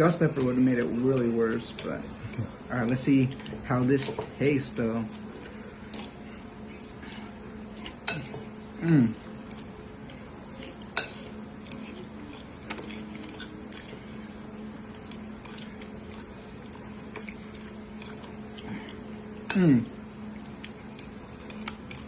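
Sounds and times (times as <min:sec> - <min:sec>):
faint low hum: 0:00.0 - 0:22.0
utensil clinking against dish: 0:00.1 - 0:05.0
person murmuring: 0:08.8 - 0:09.2, 0:19.5 - 0:20.0.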